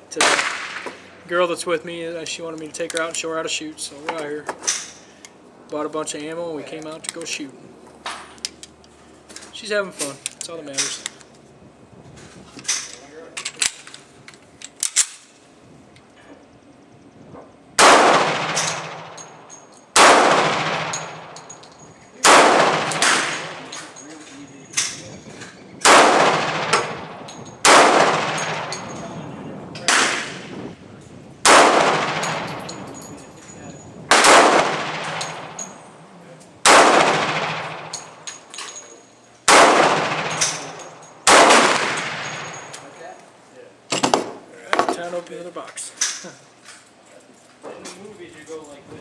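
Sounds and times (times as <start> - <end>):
handgun shots: 17.8 - 19.2, 20.0 - 21.4, 22.2 - 23.9, 25.8 - 28.9, 29.8 - 30.4, 31.4 - 32.8, 34.1 - 35.6, 36.6 - 38.2, 39.5 - 42.8.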